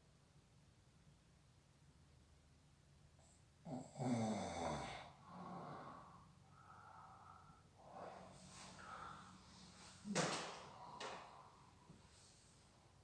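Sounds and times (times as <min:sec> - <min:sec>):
person snoring: 0:03.6 - 0:06.2.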